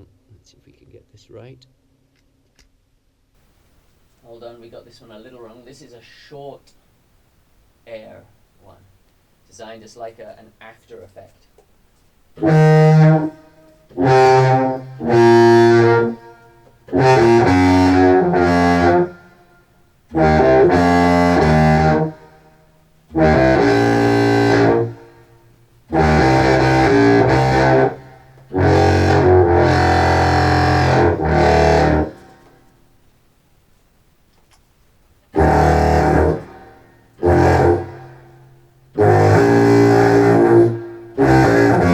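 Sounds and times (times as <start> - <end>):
contrabass clarinet with reverb: 12.4 - 19.4, 20.1 - 22.5, 23.1 - 25.3, 25.9 - 32.6, 35.4 - 41.9.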